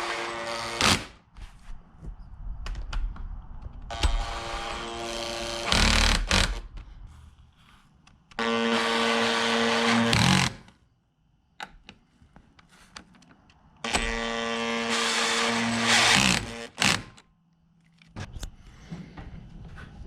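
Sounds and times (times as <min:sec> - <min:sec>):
power drill whining: 0:03.9 - 0:06.6, 0:08.4 - 0:10.6, 0:13.9 - 0:17.1.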